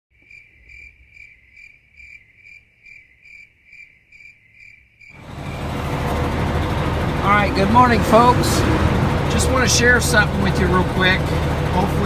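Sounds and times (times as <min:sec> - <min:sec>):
cricket chirping: 0:00.2 - 0:07.2
motor running: 0:05.2 - 0:12.0.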